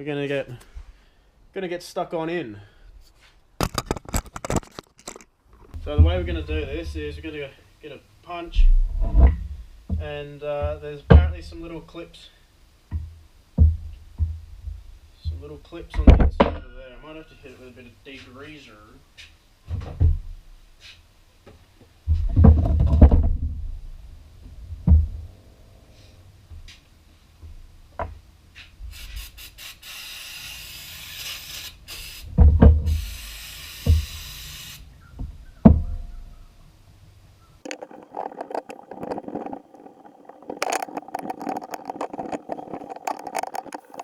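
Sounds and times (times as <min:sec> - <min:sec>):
power tool rattling and scraping: 0:03.6 - 0:05.8, 0:37.7 - 0:44.0.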